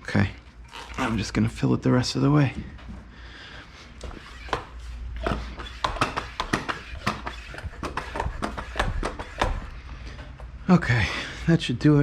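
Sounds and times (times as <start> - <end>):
bicycle pump clicking: 5.2 - 9.7.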